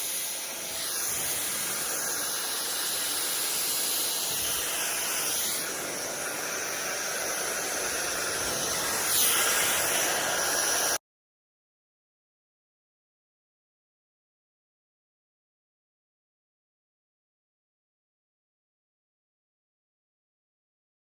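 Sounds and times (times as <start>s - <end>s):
hair dryer blowing air: 0.0s - 11.0s.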